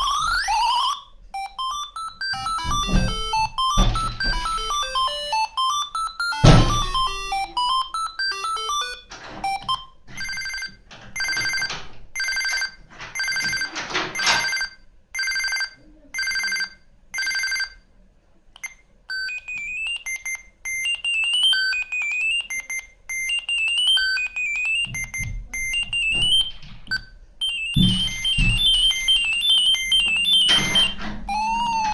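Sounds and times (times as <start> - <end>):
chirping melody of high notes: 0.0 - 9.1
phone ringtone electronic notes: 0.0 - 17.8, 18.6 - 31.9
high electronic ring beep: 19.2 - 31.9.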